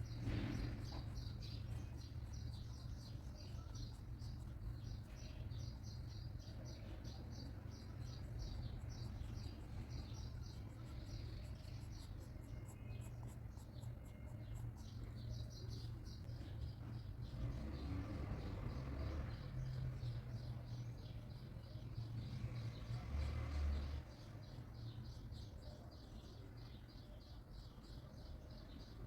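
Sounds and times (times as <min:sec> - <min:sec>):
steady low hum: 0:00.0 - 0:17.2.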